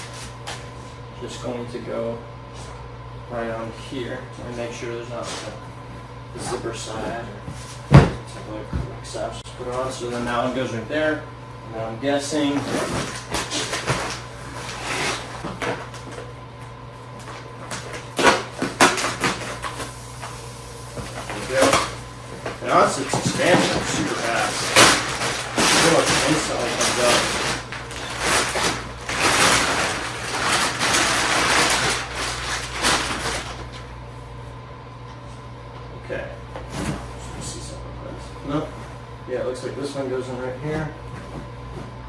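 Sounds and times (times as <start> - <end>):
plastic wrapping rustling: 12.5 - 16.3, 17.2 - 33.8.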